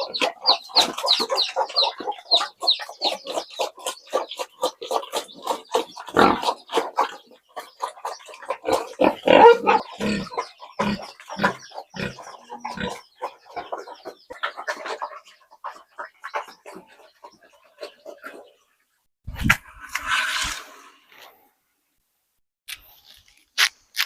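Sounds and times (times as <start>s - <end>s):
pigs grunting: 3.4s - 18.6s.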